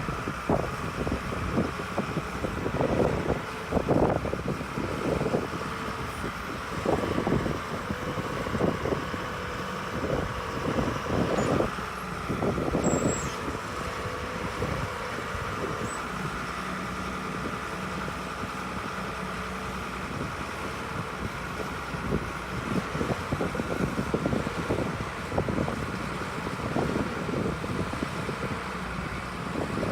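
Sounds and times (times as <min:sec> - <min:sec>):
excavator engine running: 0:00.0 - 0:29.9.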